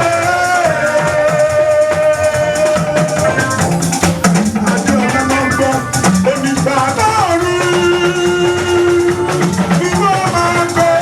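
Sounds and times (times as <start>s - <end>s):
church praise music: 0.0s - 11.0s
drums: 0.0s - 11.0s
guitar: 0.0s - 11.0s.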